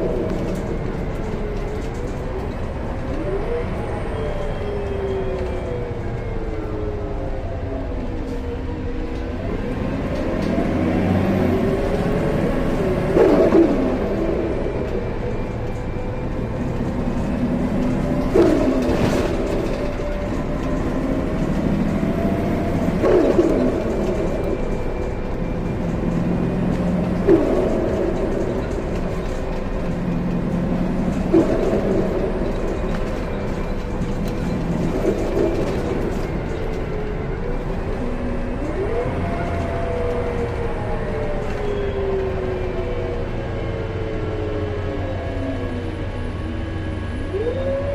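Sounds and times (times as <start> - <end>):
bus engine running: 0.0 - 47.9.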